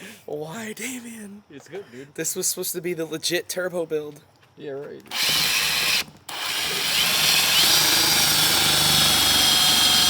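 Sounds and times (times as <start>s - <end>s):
power drill driving screw: 5.1s - 10.0s.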